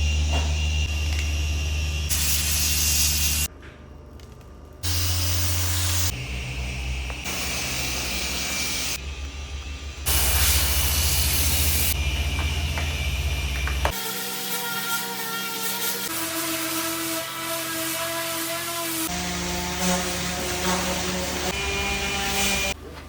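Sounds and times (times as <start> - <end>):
spraying hiss: 10.1 - 12.0.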